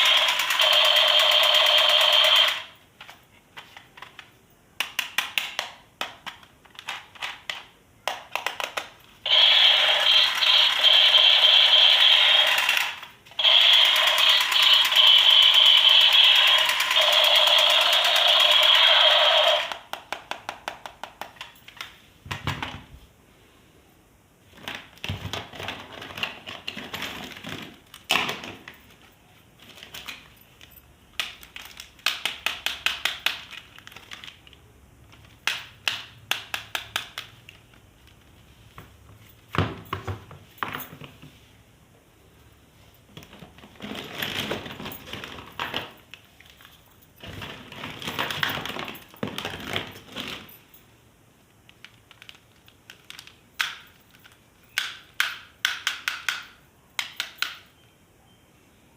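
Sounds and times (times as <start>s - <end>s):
plastic parts clicking and rattling: 0.0s - 9.5s, 24.5s - 38.3s, 43.1s - 50.6s, 51.6s - 57.6s.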